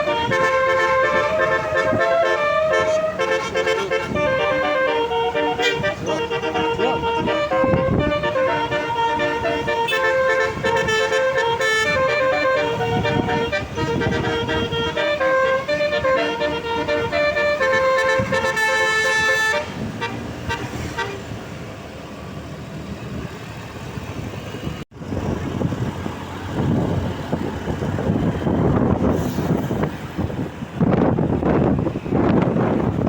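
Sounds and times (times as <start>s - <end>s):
bus melody air horn: 0.0s - 21.5s
road and wind noise: 0.0s - 33.0s.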